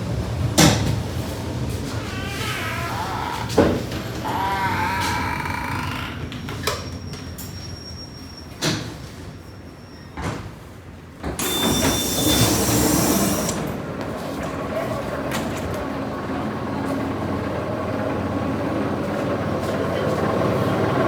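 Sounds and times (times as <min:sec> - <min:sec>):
train low rumble: 0:00.0 - 0:11.4, 0:12.4 - 0:21.0
pneumatic door hiss with high tone: 0:11.3 - 0:13.7.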